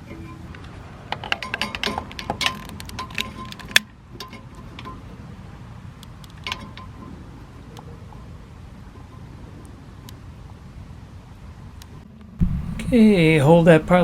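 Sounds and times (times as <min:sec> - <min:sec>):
steady low hum: 0:12.4 - 0:14.0.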